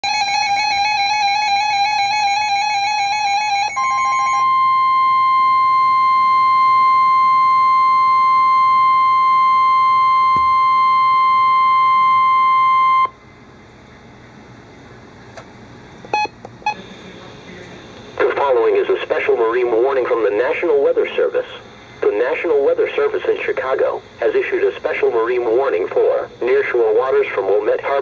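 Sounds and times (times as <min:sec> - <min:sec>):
warbling alert tone: 0:00.0 - 0:05.0
steady high tone: 0:00.0 - 0:13.2.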